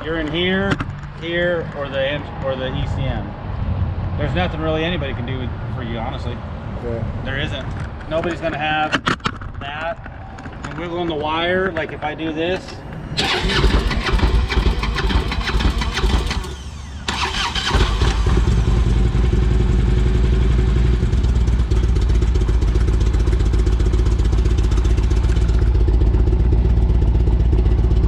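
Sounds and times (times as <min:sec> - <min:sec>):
motorcycle engine running raggedly: 0:13.2 - 0:28.0.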